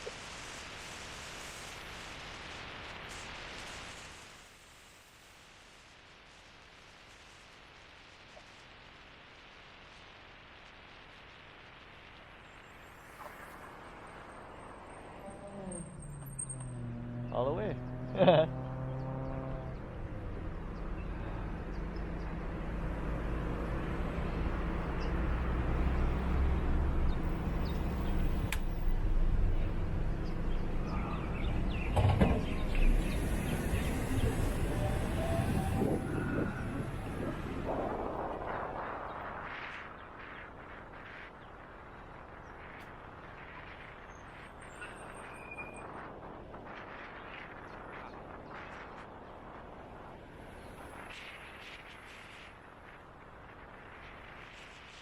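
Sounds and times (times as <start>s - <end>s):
wind buffeting microphone: 19.1s - 55.0s.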